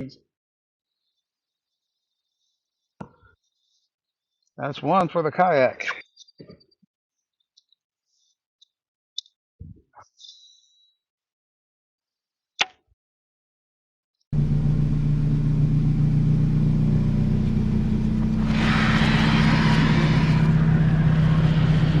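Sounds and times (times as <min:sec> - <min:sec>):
low mechanical hum: 0:14.4 - 0:22.0
hiss: 0:18.4 - 0:22.0.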